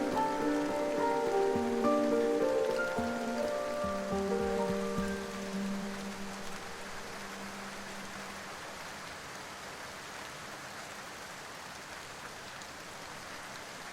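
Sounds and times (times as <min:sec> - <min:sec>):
rain falling: 0:00.0 - 0:13.9.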